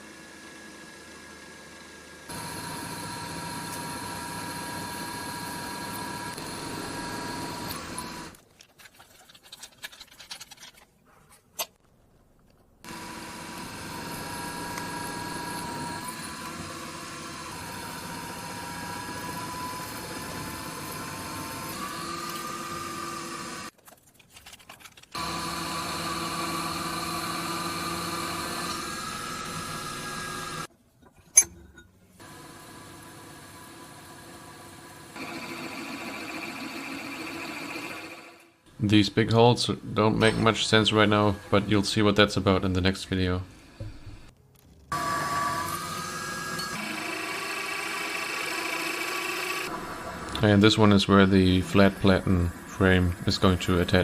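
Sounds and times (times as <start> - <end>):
milling machine cutting steel: 2.3 - 8.4, 12.9 - 23.7, 25.2 - 30.7, 39.7 - 42.3, 44.9 - 54.0.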